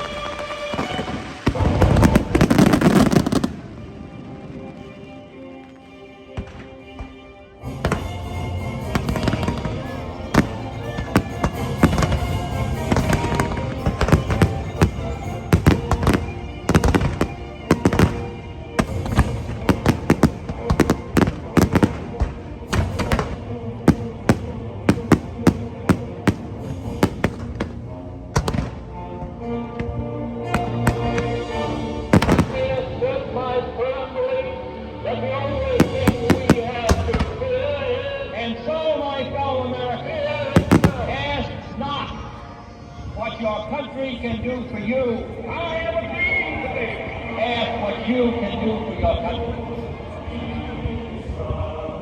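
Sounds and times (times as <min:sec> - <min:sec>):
firework bangs and crackles: 0:00.0 - 0:04.9, 0:06.4 - 0:28.9, 0:30.5 - 0:32.8, 0:35.8 - 0:37.4, 0:40.6 - 0:41.3
show music: 0:00.0 - 0:44.3.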